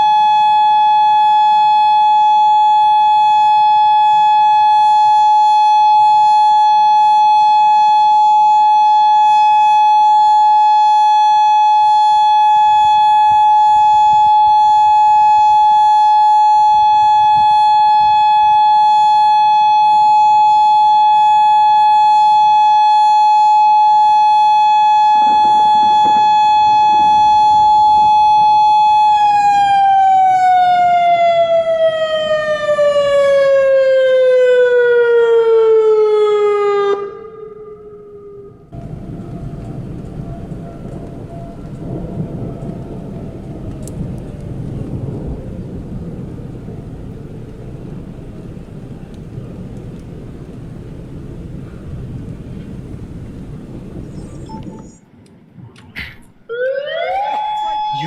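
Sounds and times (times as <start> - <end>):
warning siren tone: 0.0 - 46.8, 53.9 - 55.1, 56.4 - 58.0
brief rush of noise: 54.0 - 56.5.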